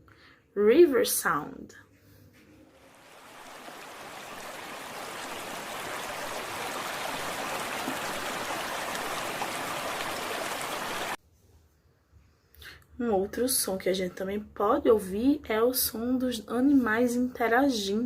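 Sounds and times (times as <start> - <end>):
river water rushing: 2.9 - 11.2.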